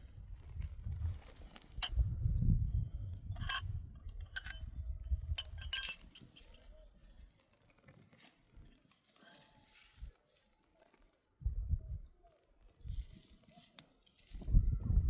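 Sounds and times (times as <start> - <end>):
light clinks and taps: 3.1 - 10.2.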